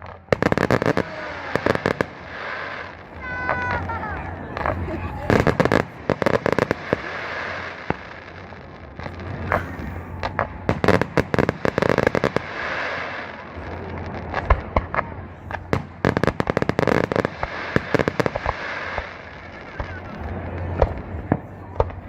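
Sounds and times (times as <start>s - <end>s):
fireworks crackling and banging: 0.0s - 22.0s
steady hiss: 5.4s - 14.8s, 15.5s - 20.4s.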